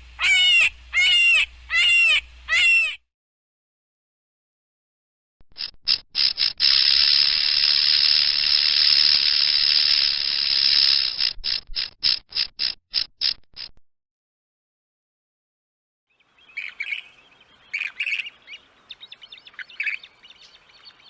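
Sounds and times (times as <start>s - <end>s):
rattlesnake tail rattling: 5.5s - 13.7s.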